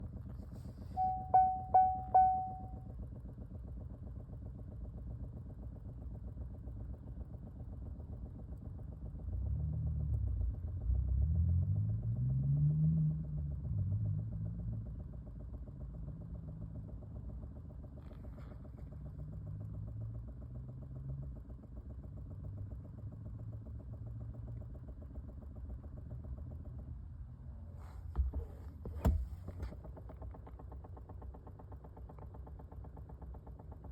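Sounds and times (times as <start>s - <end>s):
low hum: 0.8s - 3.0s
short beeps: 1.0s - 2.8s
hum rising in pitch: 1.0s - 2.9s.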